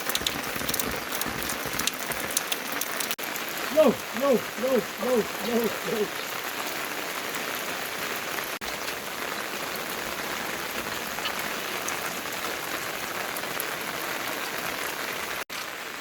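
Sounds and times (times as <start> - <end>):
steady rainfall: 0.0 - 16.0.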